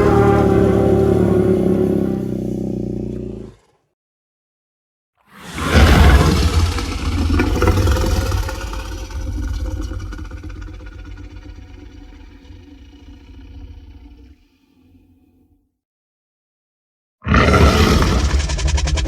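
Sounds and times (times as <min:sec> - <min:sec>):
monster hit with deep rumble: 0:17.3 - 0:19.0.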